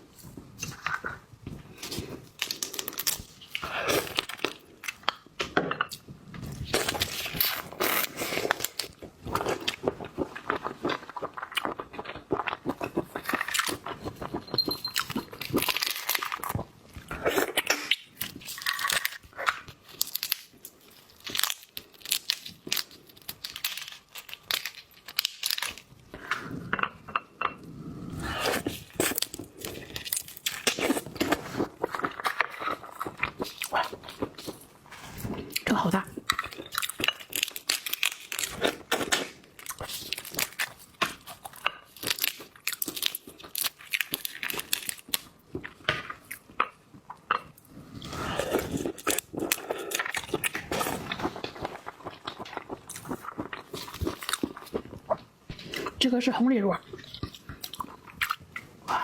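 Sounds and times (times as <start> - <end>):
crunching and chewing: 0.2 - 26.8, 28.2 - 56.0, 56.8 - 59.0
shells cracking and tearing: 17.7 - 25.9, 36.4 - 45.3.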